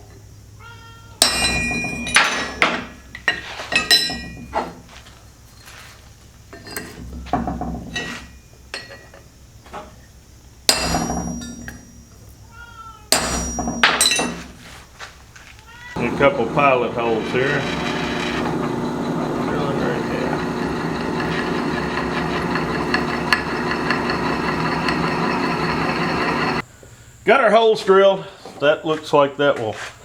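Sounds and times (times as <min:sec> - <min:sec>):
cat meowing faintly: 0:12.4 - 0:13.1
steel pieces clanking: 0:16.0 - 0:26.6.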